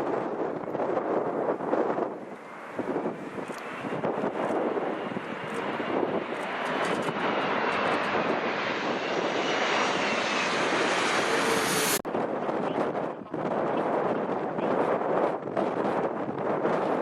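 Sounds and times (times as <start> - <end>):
jet airliner passing overhead: 0.0 - 13.2.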